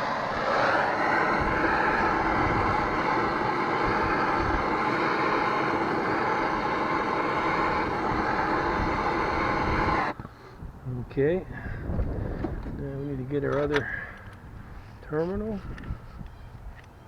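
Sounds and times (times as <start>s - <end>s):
gas torch hissing: 0.0s - 10.2s.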